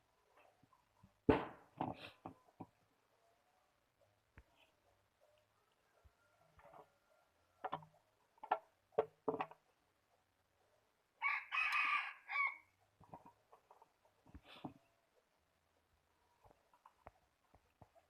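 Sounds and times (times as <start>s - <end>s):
rooster crowing: 11.2s - 12.7s.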